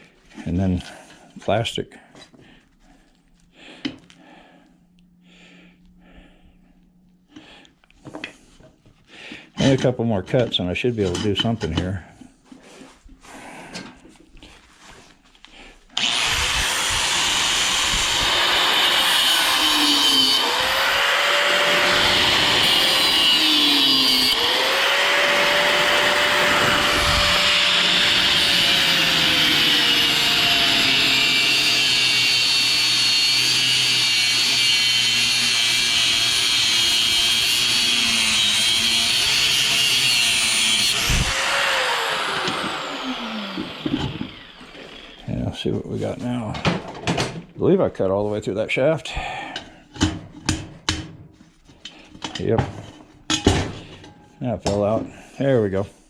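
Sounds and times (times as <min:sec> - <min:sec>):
angle grinder cutting steel: 0:16.0 - 0:45.4.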